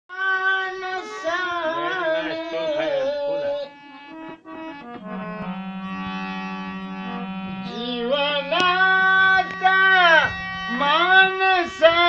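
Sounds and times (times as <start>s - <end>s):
elderly man singing: 0.1s - 3.9s, 7.6s - 12.0s.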